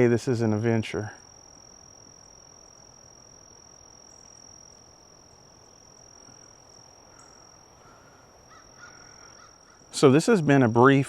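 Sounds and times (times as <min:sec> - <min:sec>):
insects trilling: 0:00.0 - 0:11.0
soft outdoor hiss: 0:00.0 - 0:11.0.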